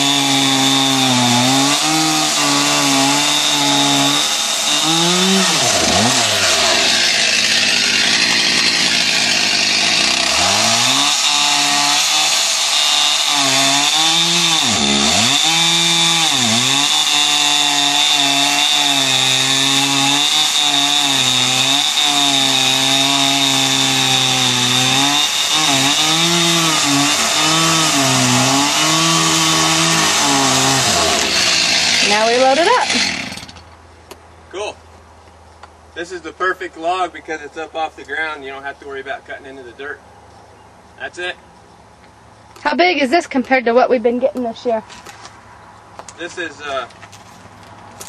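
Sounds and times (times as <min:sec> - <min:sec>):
chainsaw cutting log: 0:00.0 - 0:33.6.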